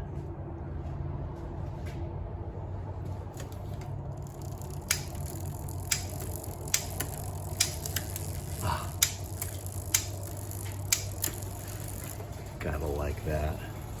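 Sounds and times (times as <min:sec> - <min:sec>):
steady low hum: 0:00.0 - 0:14.0
bicycle gear shifter clicking: 0:03.4 - 0:12.3.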